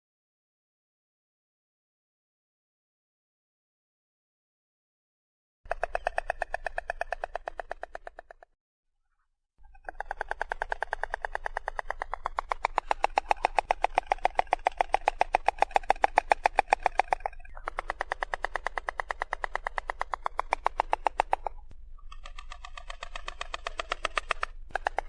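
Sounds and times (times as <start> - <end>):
stork bill clattering: 9.7 - 25.0.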